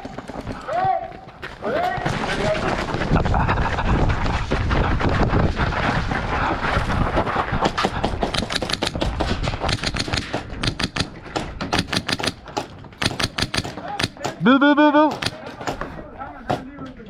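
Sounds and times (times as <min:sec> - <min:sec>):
airsoft guns firing: 0:08.2 - 0:15.9.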